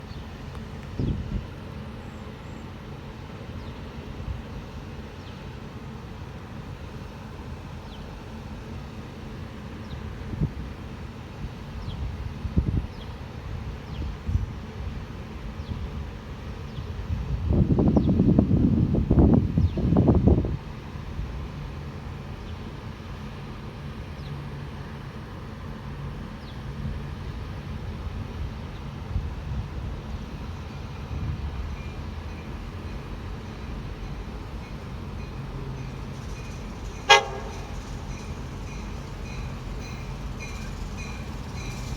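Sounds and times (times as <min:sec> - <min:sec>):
diesel locomotive engine hum: 0:00.0 - 0:41.9
wind buffeting microphone: 0:00.5 - 0:01.6, 0:11.8 - 0:13.0, 0:16.9 - 0:21.4.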